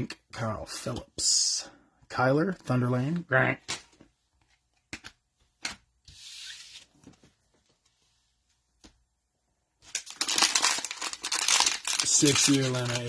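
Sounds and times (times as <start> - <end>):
cards clicking and tapping: 3.6 - 5.9
cards sliding against each other: 6.1 - 6.9.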